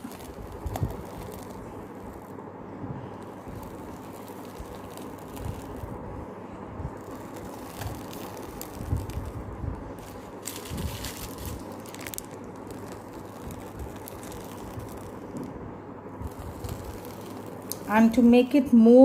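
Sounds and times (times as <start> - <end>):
plastic bag crinkling: 0.0 - 2.3, 3.2 - 6.0, 7.0 - 9.4, 10.0 - 15.5, 16.2 - 18.3
background hiss: 0.0 - 18.8.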